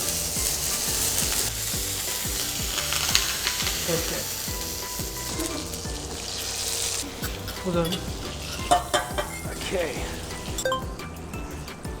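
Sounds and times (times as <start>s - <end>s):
chicken sizzling in a pan: 0.0s - 10.6s.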